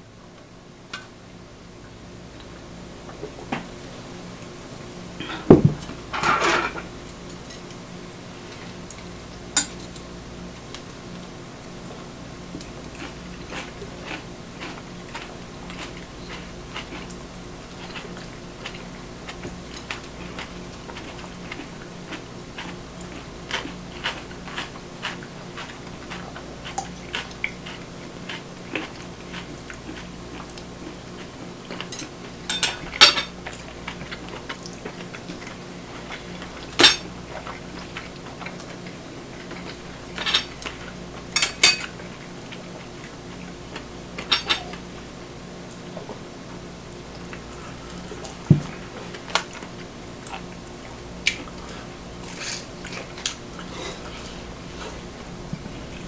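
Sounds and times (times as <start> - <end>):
steady low hum: 0.0 - 56.0
utensils and dishes clinking: 5.2 - 7.7, 31.8 - 33.4, 36.6 - 37.1, 39.6 - 42.0, 44.2 - 44.8, 52.2 - 54.2.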